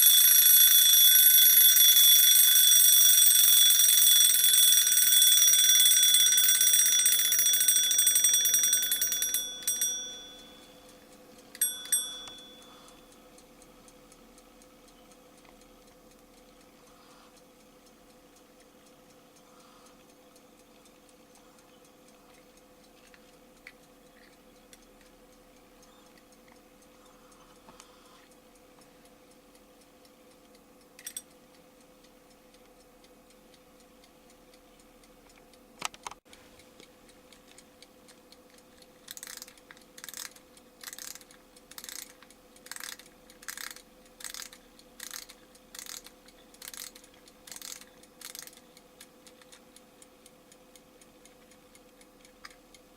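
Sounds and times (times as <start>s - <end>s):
alarm clock mechanism clicking: 0.0s - 34.6s, 36.8s - 52.9s
faint steady hum: 0.0s - 52.9s.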